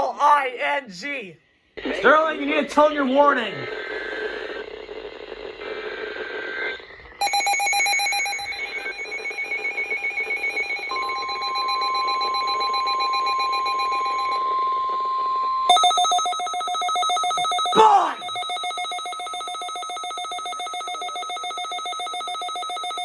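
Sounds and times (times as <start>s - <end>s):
pulsing ringing alarm: 7.2s - 23.0s
rapidly pulsing alarm buzz: 15.7s - 23.0s.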